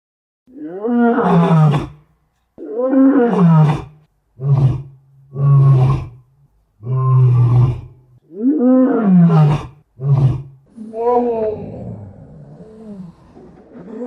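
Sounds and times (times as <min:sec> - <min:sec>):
lion calling: 0:06.8 - 0:14.0.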